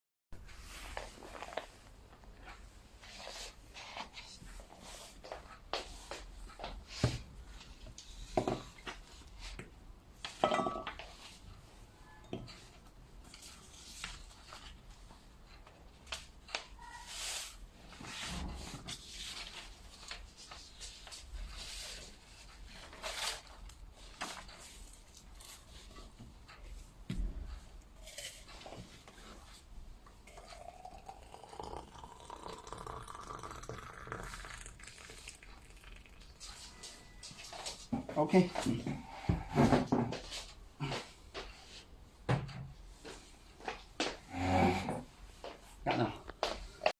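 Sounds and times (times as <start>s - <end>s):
dishes knocking and clinking: 10.4s - 11.0s
water poured into a cup: 30.3s - 36.4s.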